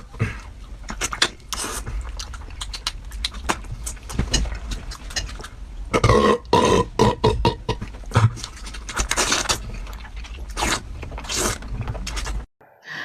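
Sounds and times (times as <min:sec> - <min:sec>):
wet chewing and lip-smacking: 0:00.0 - 0:05.6, 0:07.8 - 0:12.4
throaty burp-like vocal sound: 0:05.9 - 0:07.8.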